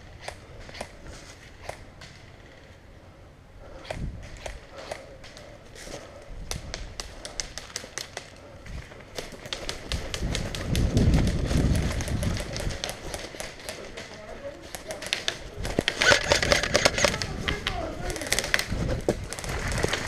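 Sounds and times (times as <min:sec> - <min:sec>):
airsoft guns firing: 0:09.1 - 0:18.7.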